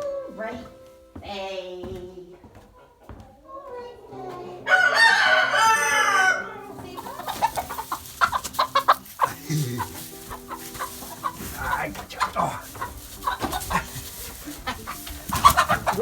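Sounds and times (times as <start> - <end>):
hens clucking: 2.3 - 16.0
rooster crowing: 4.7 - 6.6.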